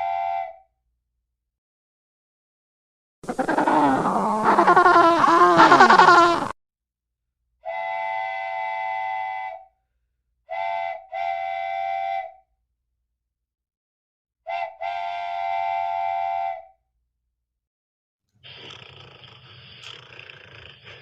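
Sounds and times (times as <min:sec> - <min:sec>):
multi-tone whistle blasts: 0:00.0 - 0:00.7, 0:07.6 - 0:09.8, 0:10.5 - 0:12.4, 0:14.5 - 0:16.8.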